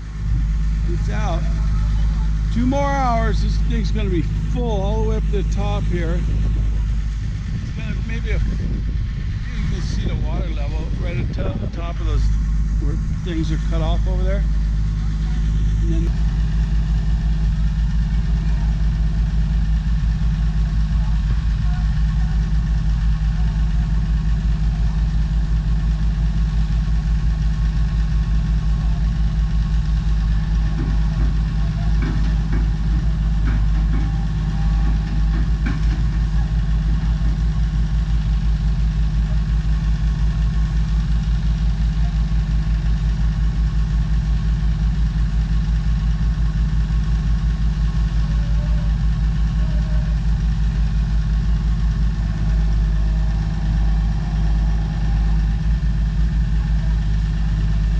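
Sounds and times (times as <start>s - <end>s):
excavator engine running: 0.0s - 57.9s
knocks and clatters: 30.2s - 37.8s.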